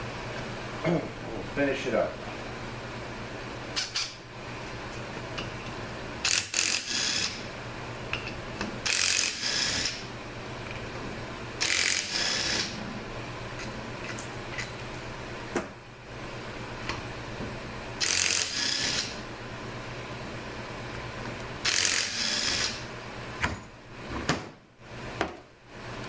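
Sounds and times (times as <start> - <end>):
ratchet running: 6.2 - 7.4, 8.9 - 10.0, 11.6 - 12.7, 18.0 - 19.2, 21.6 - 22.8.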